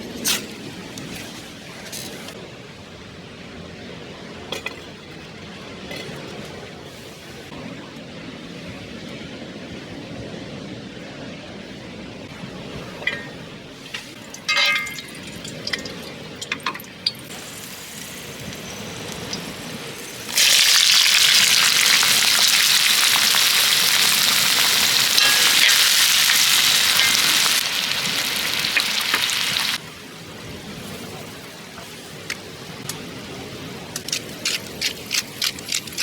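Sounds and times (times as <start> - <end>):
food sizzling on griddle pan: 17.3 - 29.8.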